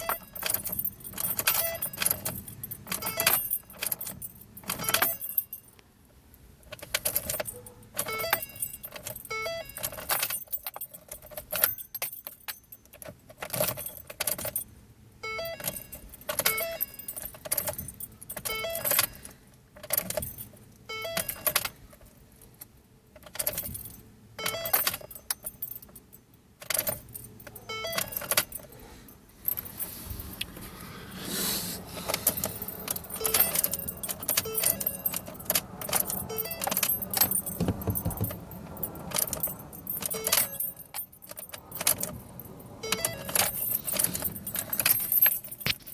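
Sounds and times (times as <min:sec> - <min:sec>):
car keys jangling: 0:00.0 - 0:31.2, 0:31.8 - 0:45.9.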